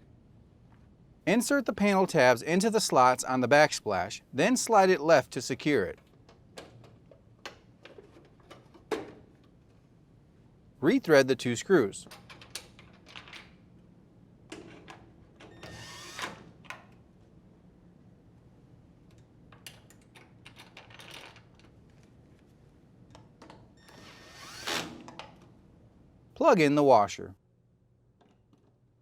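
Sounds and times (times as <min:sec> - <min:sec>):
drill driver driving screws: 0:15.6 - 0:16.5, 0:23.8 - 0:25.2.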